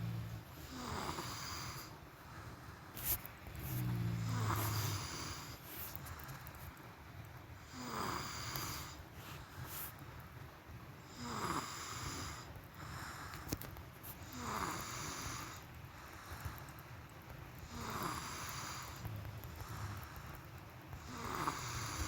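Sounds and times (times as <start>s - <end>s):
person snoring: 0.0s - 2.0s, 3.5s - 5.6s, 7.7s - 9.0s, 11.1s - 12.5s, 14.3s - 15.6s, 17.7s - 20.3s, 21.0s - 22.0s.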